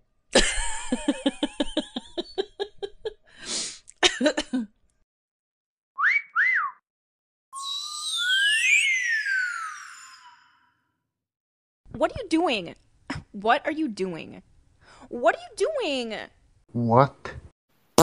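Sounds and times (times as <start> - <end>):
rise-and-fall whistles: 6.0 - 6.8, 7.6 - 10.8.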